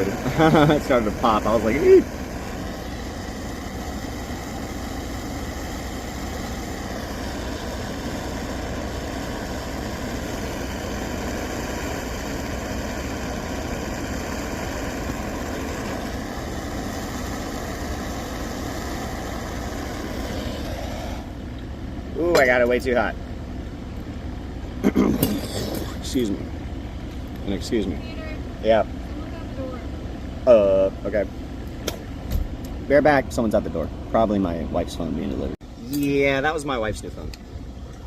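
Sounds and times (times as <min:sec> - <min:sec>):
torch flame hissing: 0:00.0 - 0:22.9, 0:24.8 - 0:29.8.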